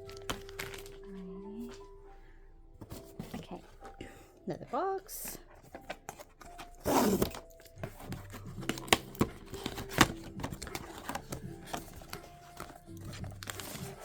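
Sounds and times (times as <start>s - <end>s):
cardboard ripping: 0.0s - 1.0s, 5.7s - 14.0s
cardboard and plastic crinkling: 0.0s - 2.2s, 2.8s - 14.0s.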